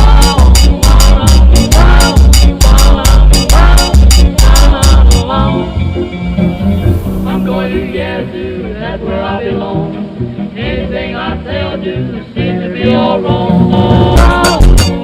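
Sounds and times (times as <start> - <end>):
drum beat: 0.0 - 5.2, 14.2 - 15.0
person singing: 0.0 - 15.0.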